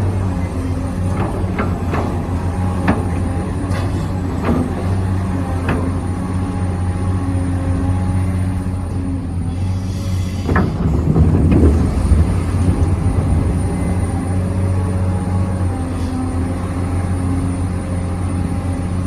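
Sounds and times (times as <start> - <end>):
sharp clicks and knocks: 1.1 - 4.9.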